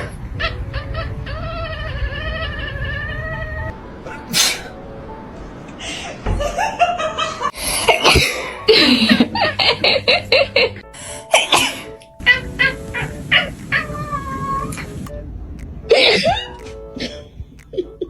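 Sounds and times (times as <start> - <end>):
cat meowing and yowling: 0.9 - 4.3, 12.2 - 15.1
background music: 3.3 - 6.7, 7.5 - 18.0
person sneezing: 4.1 - 4.8, 8.0 - 8.5.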